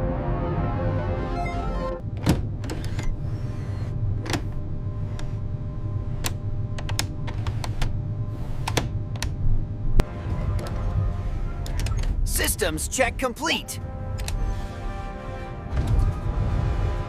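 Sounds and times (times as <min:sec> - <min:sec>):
steady low hum: 0:02.0 - 0:13.0.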